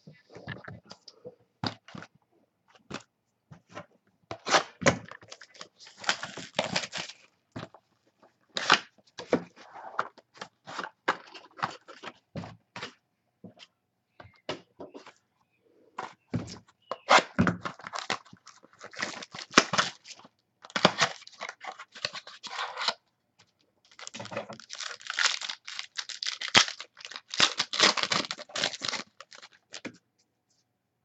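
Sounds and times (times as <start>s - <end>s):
plastic wrapping ripping and crinkling: 5.2s - 7.2s, 17.1s - 22.6s, 23.9s - 29.8s.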